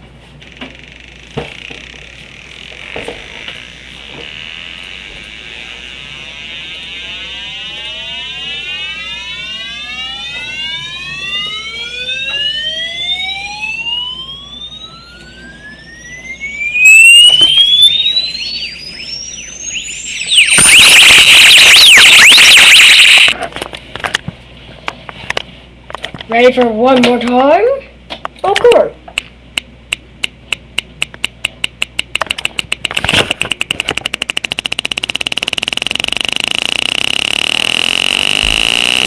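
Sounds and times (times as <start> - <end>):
rising electronic tones: 0.7 - 23.4, 33.3 - 39.0
loud harsh screech: 1.2 - 8.7, 16.5 - 23.4, 34.8 - 39.0.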